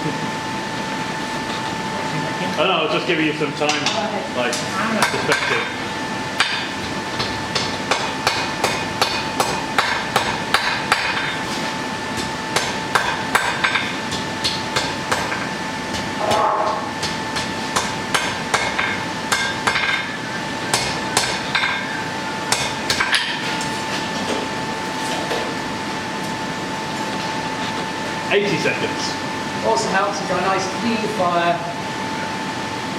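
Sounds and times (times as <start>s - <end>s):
steady high hum: 0.0s - 32.9s
hammer striking iron on anvil: 6.4s - 11.4s, 12.5s - 21.9s, 22.5s - 23.5s.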